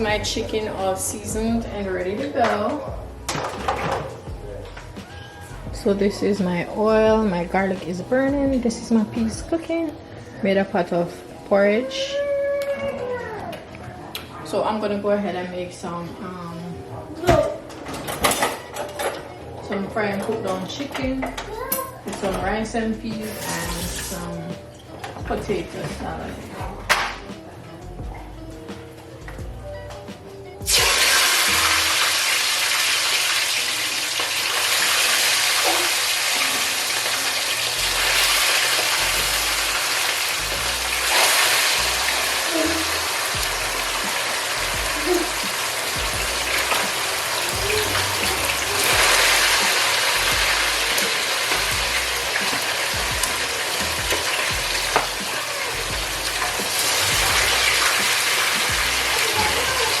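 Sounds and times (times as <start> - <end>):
chicken sizzling in hot oil: 30.7 - 60.0.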